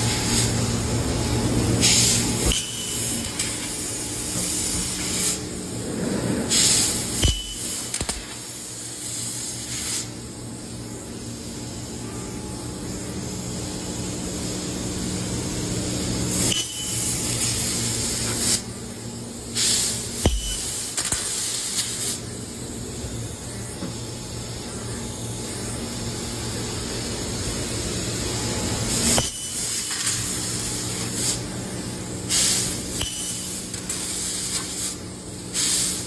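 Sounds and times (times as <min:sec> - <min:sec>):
high-pitched hiss blast: 0:00.0 - 0:05.8, 0:06.4 - 0:10.2, 0:19.5 - 0:22.4, 0:27.0 - 0:36.0
continuous gas hiss: 0:00.0 - 0:36.0.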